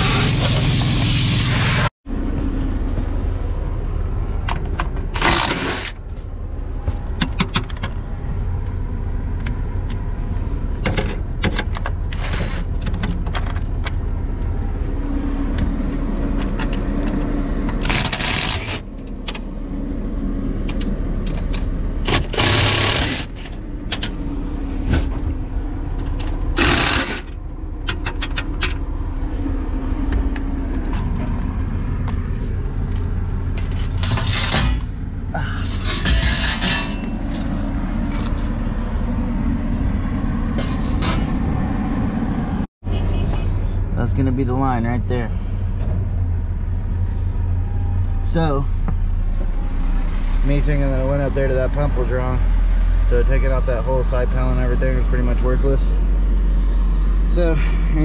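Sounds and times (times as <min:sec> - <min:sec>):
steady low rumble: 0:06.0 - 0:58.0
metal tools clanking: 0:33.6 - 0:38.5.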